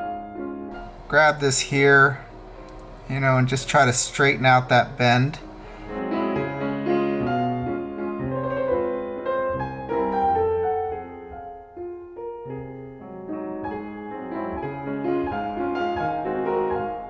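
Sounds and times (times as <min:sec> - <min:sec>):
slow piano music: 0:05.4 - 0:17.0.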